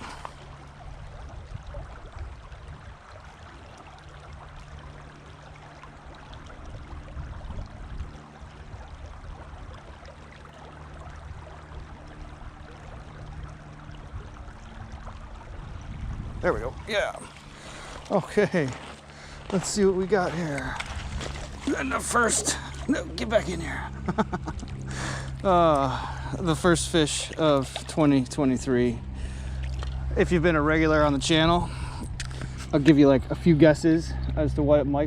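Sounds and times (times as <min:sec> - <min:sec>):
creek water flowing: 0:00.0 - 0:35.0.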